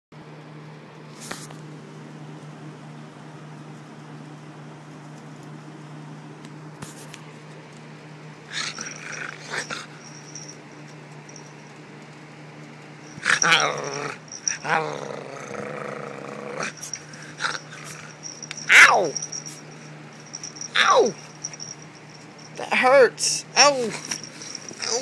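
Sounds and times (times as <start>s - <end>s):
steady low hum: 0.2s - 25.0s
dog growling and snarling: 8.5s - 10.5s, 13.1s - 19.6s, 23.9s - 25.0s.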